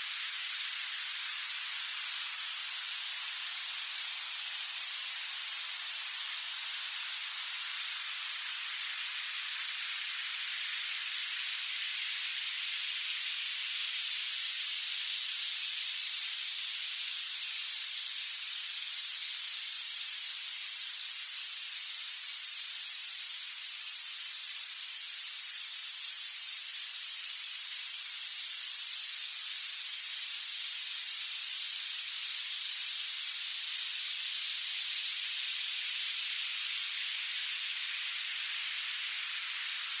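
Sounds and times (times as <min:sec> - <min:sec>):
high-pitched hiss: 0:00.0 - 0:40.0.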